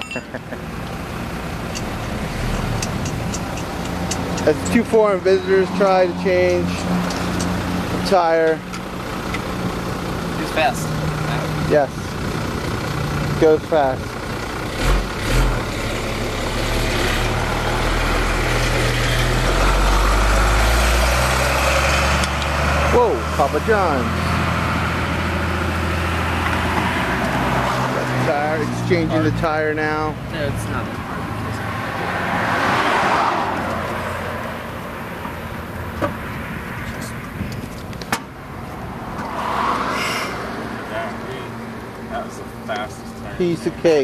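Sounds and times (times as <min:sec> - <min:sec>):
heavy vehicle engine running: 0:00.0 - 0:31.7
road noise: 0:00.0 - 0:44.0.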